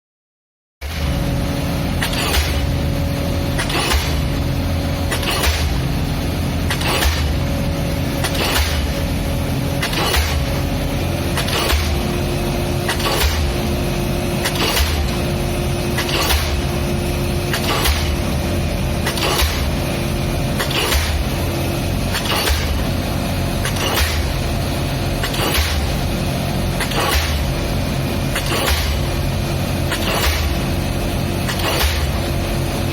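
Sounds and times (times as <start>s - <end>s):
pile driver engine hum: 0.8s - 32.9s
pile hammer banging: 2.0s - 2.8s, 3.6s - 4.4s, 5.0s - 7.5s, 8.1s - 9.2s, 9.8s - 12.2s, 12.8s - 13.7s, 14.4s - 15.3s, 15.9s - 16.8s, 17.4s - 18.3s, 19.0s - 19.9s, 20.6s - 21.5s, 22.1s - 23.0s, 23.6s - 30.8s, 31.5s - 32.4s.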